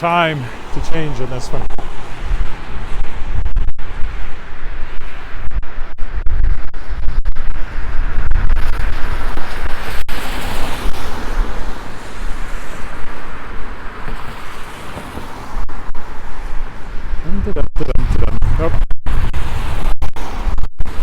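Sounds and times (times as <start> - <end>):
car engines passing: 0.0 - 5.8
wind rumble on microphone: 0.4 - 21.0
tyres hissing on wet street: 10.2 - 17.1.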